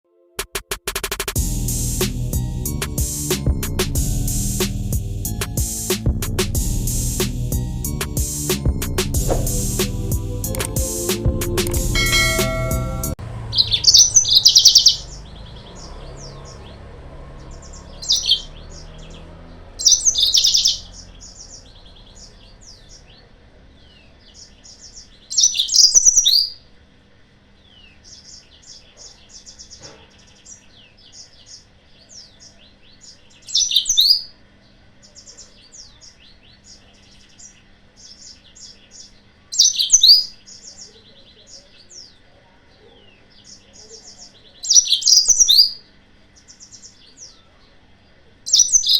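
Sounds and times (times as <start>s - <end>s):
canary singing trilled notes: 9.5s - 16.8s, 17.4s - 19.1s, 19.8s - 22.9s, 44.7s - 45.9s, 48.5s - 48.9s
soft bird twittering: 13.5s - 16.8s, 17.4s - 26.6s, 27.6s - 34.4s, 35.0s - 42.2s, 42.8s - 47.7s, 48.5s - 48.9s.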